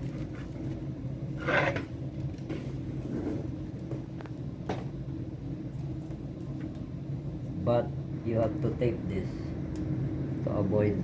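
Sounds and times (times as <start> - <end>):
steady low hum: 0.0 - 11.0
rustling scrape: 1.4 - 1.9.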